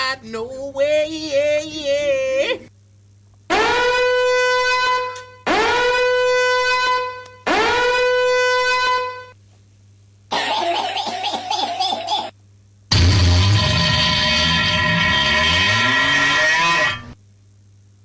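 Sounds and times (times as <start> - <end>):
buzzy horn-like sound effect: 3.5 - 9.4, 12.9 - 17.2
choppy noisy sound effect: 12.9 - 16.8.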